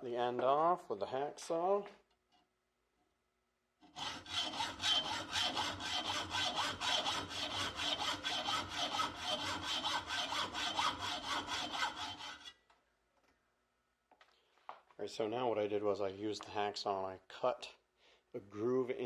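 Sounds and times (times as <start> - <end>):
hacksaw cutting metal: 3.8 - 12.6.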